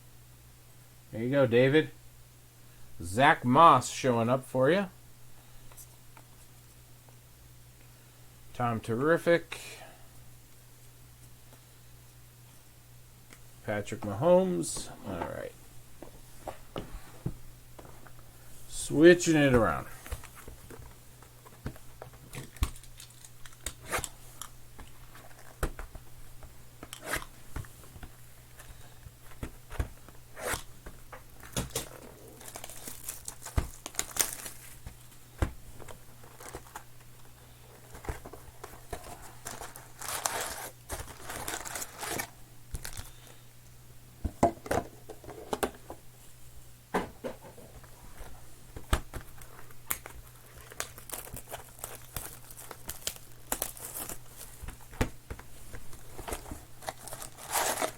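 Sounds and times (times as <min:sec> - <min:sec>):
cards clicking and rustling: 0:19.5 - 0:43.2, 0:48.2 - 0:57.9
card pack wrappers tearing: 0:22.2 - 0:25.7, 0:26.8 - 0:27.4, 0:30.3 - 0:30.7, 0:31.4 - 0:34.8, 0:36.1 - 0:36.9, 0:37.8 - 0:43.2, 0:49.4 - 0:54.9, 0:55.9 - 0:57.9.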